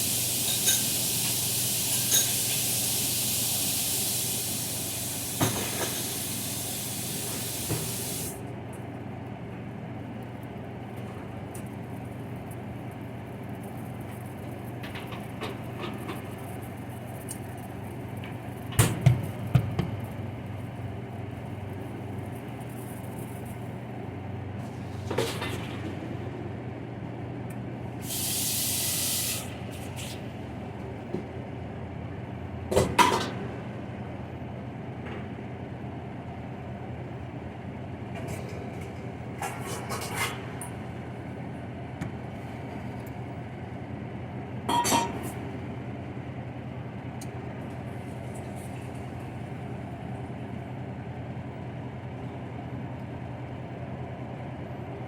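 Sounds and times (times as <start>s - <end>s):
spray-like hiss: 0.0s - 8.4s, 28.0s - 29.6s.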